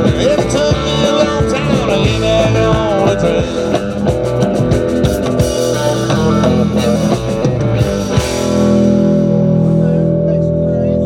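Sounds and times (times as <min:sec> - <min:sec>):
drum kit playing: 0:00.0 - 0:11.0
electric guitar: 0:00.0 - 0:11.0.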